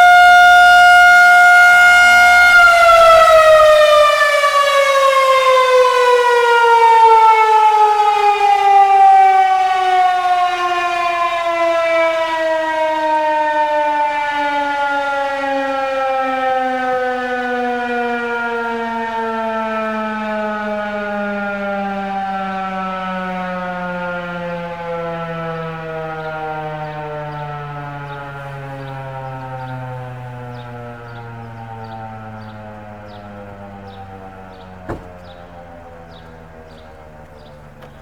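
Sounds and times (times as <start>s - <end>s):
warning siren winding down: 0.0s - 38.0s.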